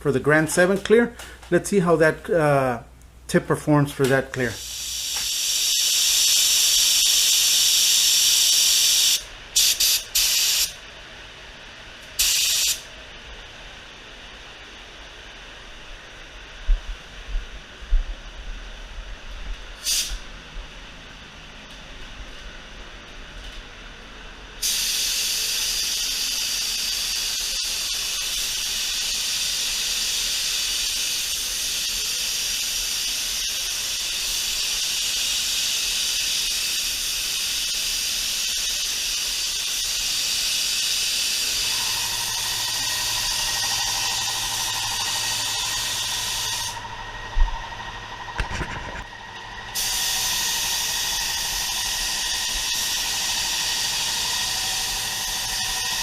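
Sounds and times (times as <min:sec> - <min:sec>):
spray gun air hiss: 0:04.5 - 0:10.8, 0:12.2 - 0:12.9, 0:19.8 - 0:20.2, 0:24.6 - 0:46.8, 0:49.7 - 0:56.0
steady whine: 0:39.1 - 0:56.0
low hum: 0:41.5 - 0:56.0.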